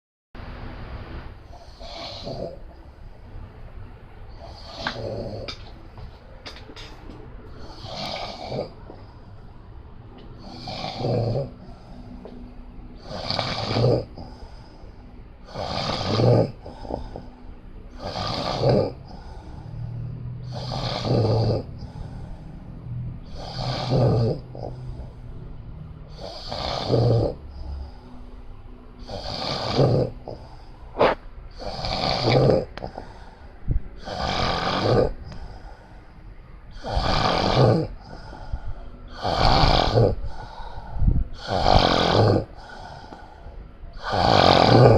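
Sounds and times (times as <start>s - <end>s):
loud snoring: 1.5s - 2.7s, 4.4s - 5.7s, 7.6s - 9.0s, 10.4s - 11.9s, 13.0s - 14.4s, 15.4s - 17.2s, 17.9s - 22.2s, 23.2s - 25.2s, 26.1s - 27.7s, 29.0s - 33.3s, 34.0s - 35.6s, 36.7s - 38.5s, 39.1s - 40.7s, 41.3s - 43.2s, 43.9s - 44.9s.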